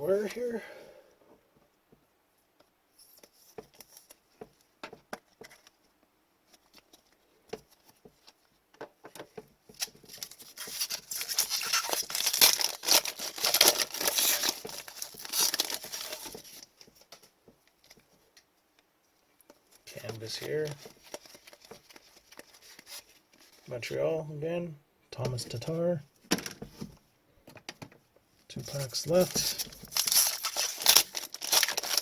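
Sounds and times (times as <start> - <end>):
foil wrapper crinkling and tearing: 9.8 - 16.7, 20.2 - 23.7, 28.7 - 32.0.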